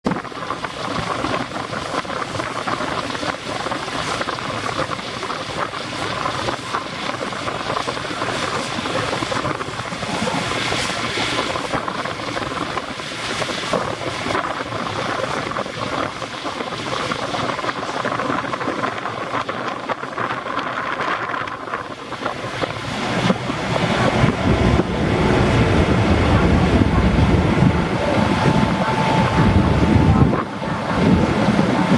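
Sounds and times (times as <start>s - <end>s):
wind buffeting microphone: 0.0s - 31.9s
water rushing: 0.1s - 31.9s
deep engine rumble: 21.3s - 31.9s.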